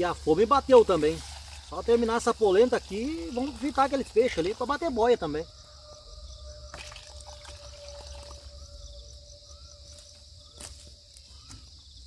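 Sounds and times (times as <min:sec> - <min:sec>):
night insects chirring: 0:00.0 - 0:12.0.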